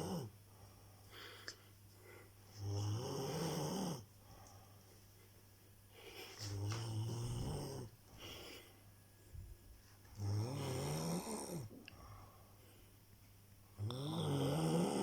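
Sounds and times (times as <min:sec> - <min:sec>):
quiet breathing: 0:00.0 - 0:15.0
person snoring: 0:02.6 - 0:04.0, 0:06.4 - 0:07.9, 0:10.2 - 0:11.8, 0:13.8 - 0:15.0.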